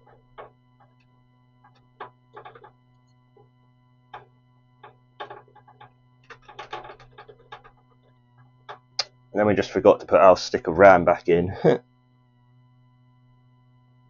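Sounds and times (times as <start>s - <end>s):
computer parts clicking and knocking: 0.0s - 9.0s
faint steady hum: 0.0s - 14.0s.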